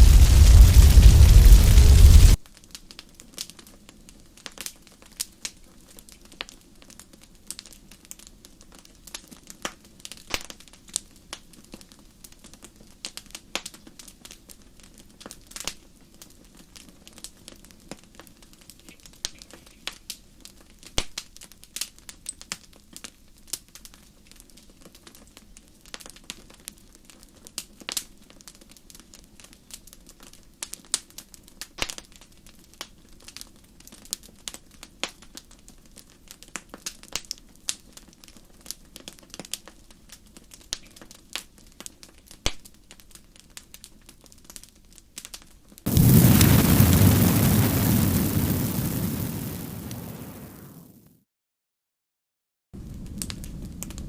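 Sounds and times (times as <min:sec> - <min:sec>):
rush of flame: 0:00.0 - 0:02.4, 0:45.9 - 0:51.2
wood crackling and popping: 0:00.0 - 0:51.1, 0:52.8 - 0:54.0.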